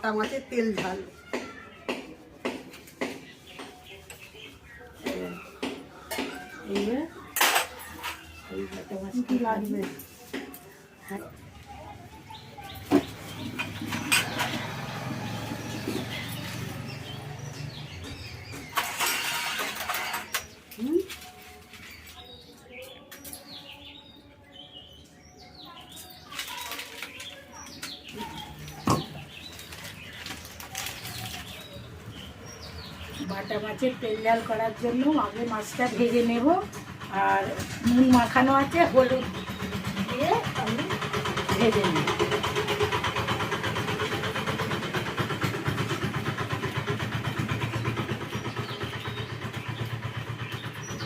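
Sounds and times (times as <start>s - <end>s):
small birds chirping: 0.1s - 51.0s
engine running: 13.0s - 19.1s, 32.0s - 51.0s.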